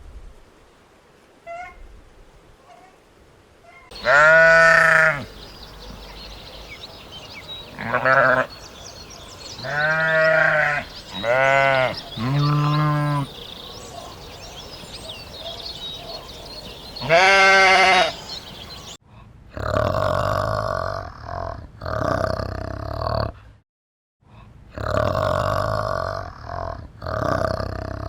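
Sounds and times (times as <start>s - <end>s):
low rough animal call: 3.6s - 14.3s
goat bleating: 3.7s - 5.3s, 7.7s - 8.5s, 9.6s - 13.3s, 17.0s - 18.2s.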